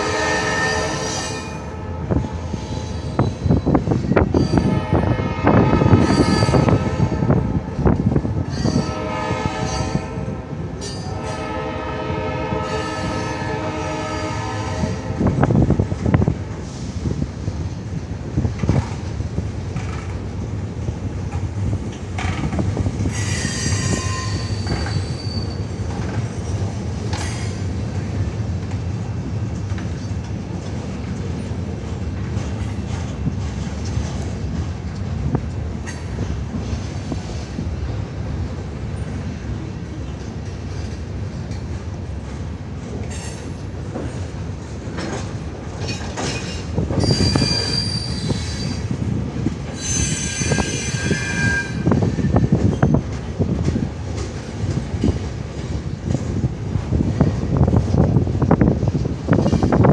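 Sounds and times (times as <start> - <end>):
freight train rumble: 0.0 - 59.9
train wheels squealing: 2.5 - 4.8, 6.0 - 7.0, 8.5 - 9.0, 12.6 - 13.5, 22.2 - 27.7, 43.0 - 43.7, 45.8 - 49.0, 49.7 - 53.2.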